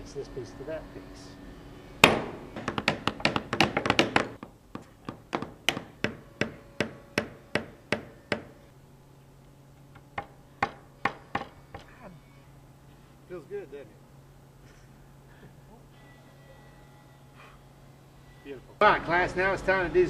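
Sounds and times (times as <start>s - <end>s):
hammers driving nails into wood: 2.0s - 8.6s, 10.0s - 11.9s.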